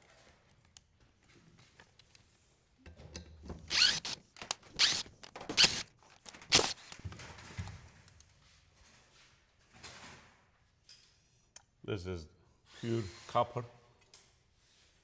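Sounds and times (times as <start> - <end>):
clicks and handling noise: 3.7 - 7.0.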